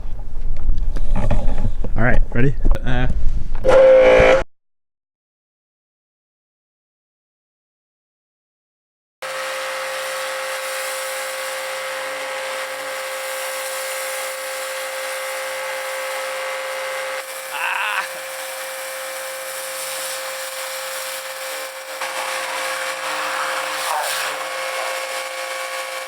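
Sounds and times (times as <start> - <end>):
brief high squeal: 3.6 - 4.5
pressure washer motor whine: 9.2 - 26.0
water spray hissing: 9.2 - 26.0.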